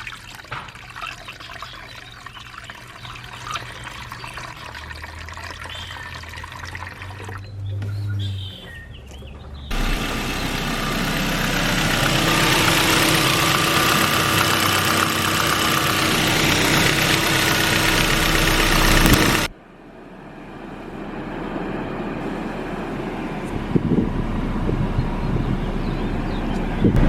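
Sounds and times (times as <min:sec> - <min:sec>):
car engine idling: 0:09.7 - 0:19.5.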